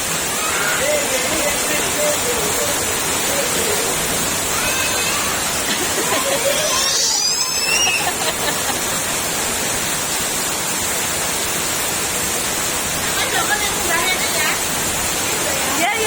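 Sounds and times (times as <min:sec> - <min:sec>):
heavy rain pouring: 0:00.0 - 0:16.0
child squealing: 0:00.3 - 0:01.0, 0:03.4 - 0:08.3.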